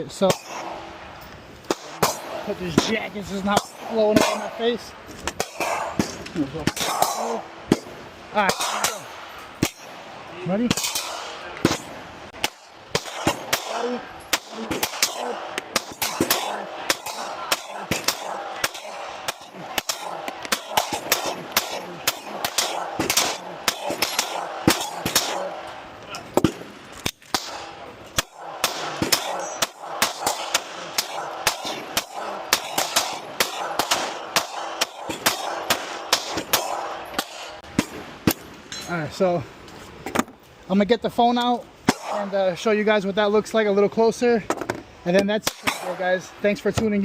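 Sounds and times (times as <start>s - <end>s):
pistol firing rapidly: 1.7s - 4.8s, 5.4s - 25.8s, 27.3s - 38.1s, 41.8s - 42.4s, 45.4s - 46.2s.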